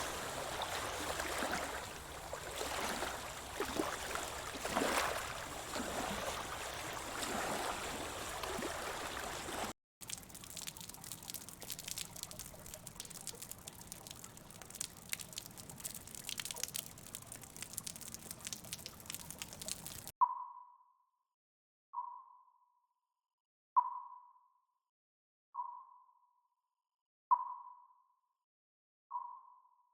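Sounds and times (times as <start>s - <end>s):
water trickling and splashing: 0.0s - 20.1s
scattered clicks and crackles: 10.0s - 20.1s.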